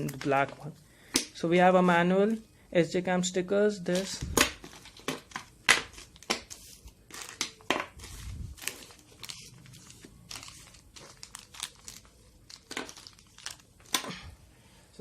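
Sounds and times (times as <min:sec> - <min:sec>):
packaging crinkling and rustling: 0:00.0 - 0:00.7, 0:03.9 - 0:14.2.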